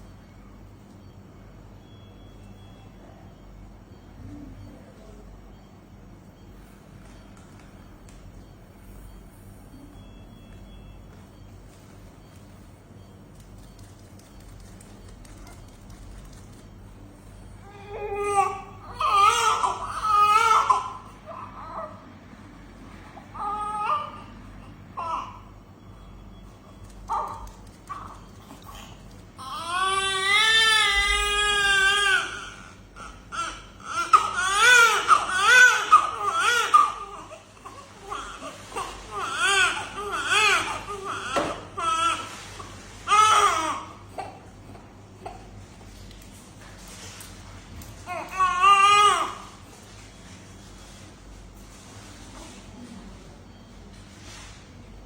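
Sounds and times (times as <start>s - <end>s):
baby crying: 17.7s - 22.0s, 29.4s - 42.3s.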